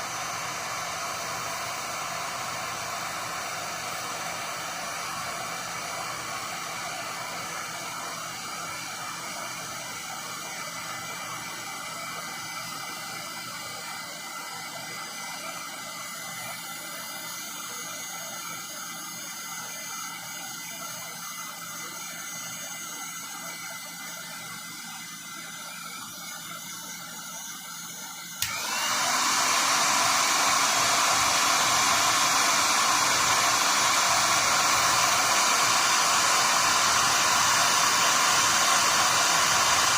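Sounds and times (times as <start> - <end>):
heat gun blowing: 0.0 - 39.9.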